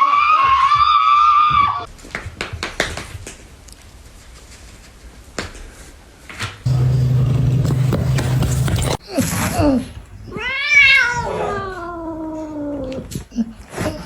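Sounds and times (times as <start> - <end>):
steady low hum: 6.7 - 9.0
cat meowing: 10.3 - 13.0.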